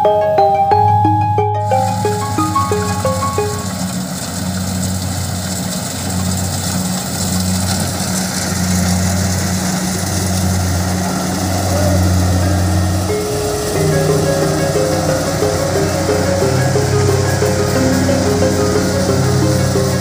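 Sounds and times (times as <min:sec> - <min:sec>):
diesel engine hum: 0:00.0 - 0:20.0
machinery hissing: 0:01.6 - 0:20.0.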